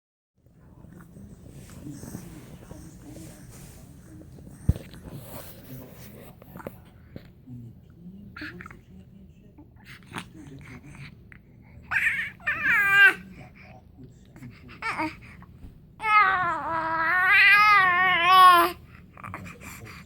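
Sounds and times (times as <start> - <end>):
baby wavering vocalization: 11.9 - 13.2, 16.0 - 19.4.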